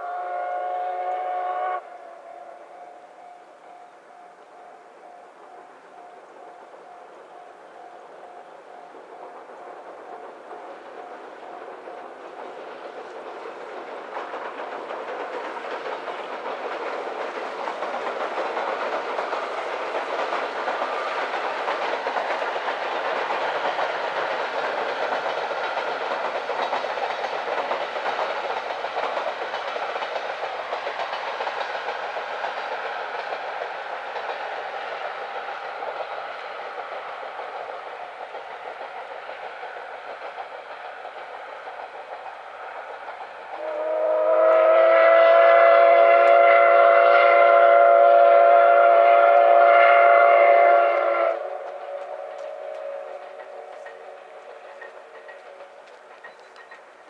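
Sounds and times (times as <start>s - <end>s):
steam train passing: 0.0s - 57.0s
wheels clattering over rail joints: 51.6s - 57.0s.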